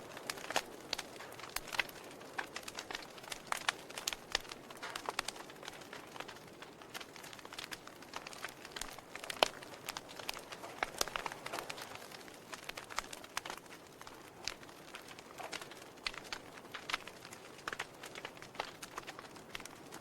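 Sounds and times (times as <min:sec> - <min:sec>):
fire snaps and pops: 0:00.0 - 0:20.0
wood fire crackling: 0:00.0 - 0:20.0.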